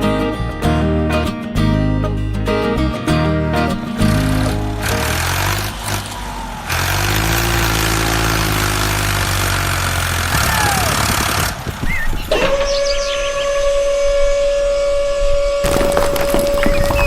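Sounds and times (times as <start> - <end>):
heavy vehicle engine rattling: 3.8 - 12.3
siren: 12.3 - 17.0.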